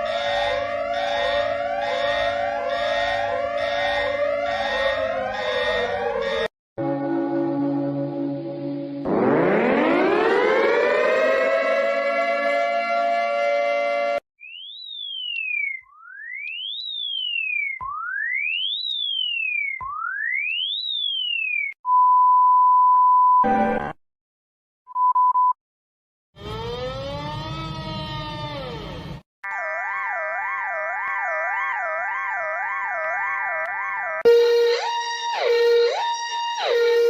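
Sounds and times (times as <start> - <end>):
siren-like tone sweeping: 0.0 - 21.7, 29.5 - 37.0.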